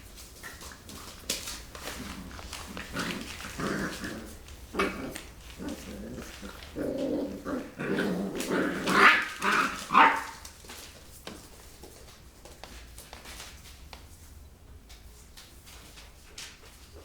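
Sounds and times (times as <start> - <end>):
puppies growling: 0.4 - 10.5
dog barks: 7.7 - 10.4.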